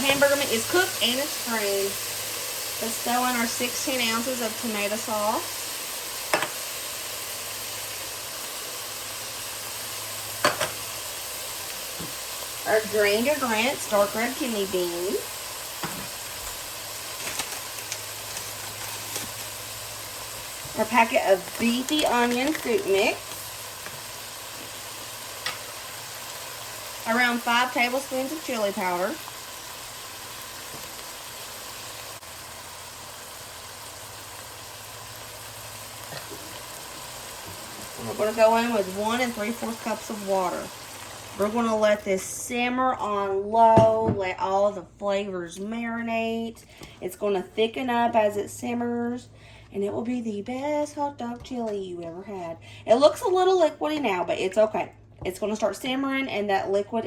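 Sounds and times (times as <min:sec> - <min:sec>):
ground beef sizzling in pan: 0:00.0 - 0:42.5
chili cooking in a pot: 0:00.0 - 0:43.6.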